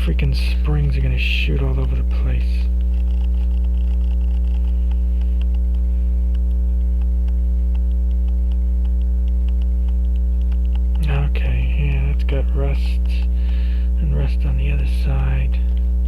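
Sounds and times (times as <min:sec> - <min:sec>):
electrical mains hum: 0:00.0 - 0:16.0.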